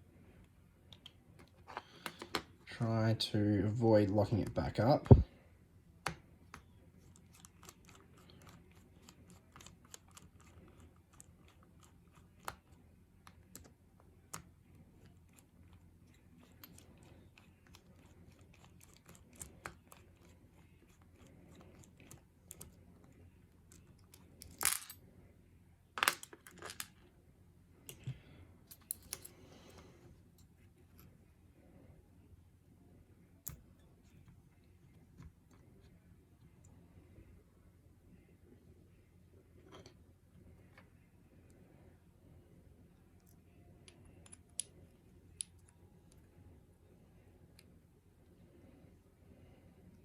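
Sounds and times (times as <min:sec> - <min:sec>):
small clicks of lock parts: 0:27.9 - 0:29.4.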